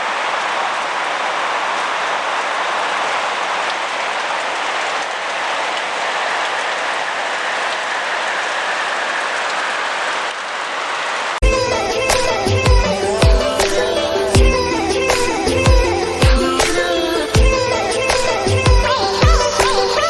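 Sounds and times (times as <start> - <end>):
rain falling on foliage: 0.0 - 11.4
music with heavy beat: 11.4 - 19.8.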